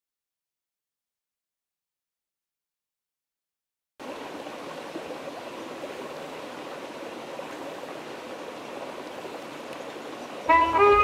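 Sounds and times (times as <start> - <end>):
flowing stream rushing: 4.0 - 11.0.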